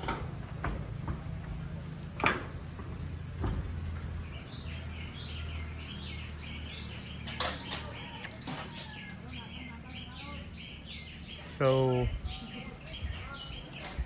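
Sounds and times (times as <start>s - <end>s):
bird chirping: 3.4s - 14.0s.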